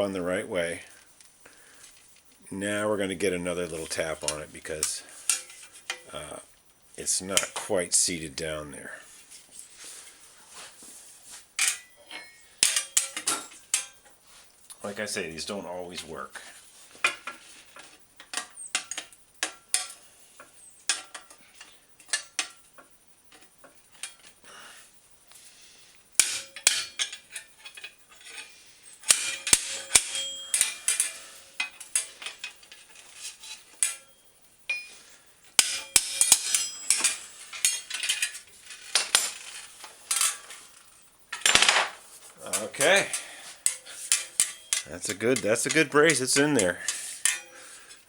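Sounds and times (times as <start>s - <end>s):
punch tapping metal rivets: 3.7s - 6.4s, 11.6s - 14.2s, 17.0s - 24.4s, 26.1s - 48.0s
metal clinking and rattling: 4.8s - 6.1s, 11.6s - 14.2s, 26.1s - 48.0s.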